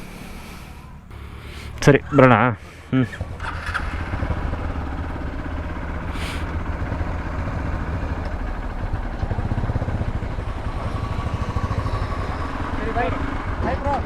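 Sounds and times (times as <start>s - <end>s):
motorcycle engine idling: 0.0s - 14.0s
short hiss: 6.1s - 6.5s.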